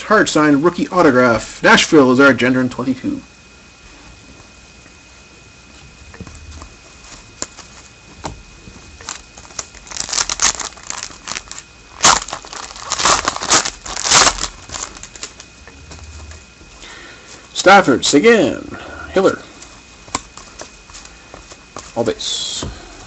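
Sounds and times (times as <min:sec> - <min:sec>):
foil wrapper crinkling and tearing: 0:09.0 - 0:15.5.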